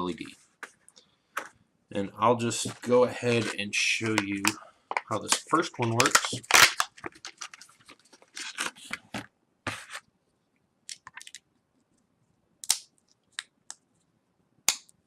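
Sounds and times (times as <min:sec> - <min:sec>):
electronic parts clicking and rustling: 0:02.6 - 0:10.0.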